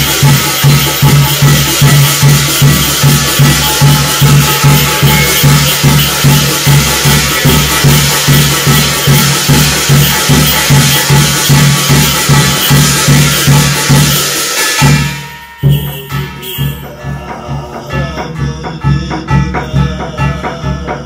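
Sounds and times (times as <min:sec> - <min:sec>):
cymbals clashing and jingling: 0:00.0 - 0:21.0
drum beating steadily: 0:00.0 - 0:21.0.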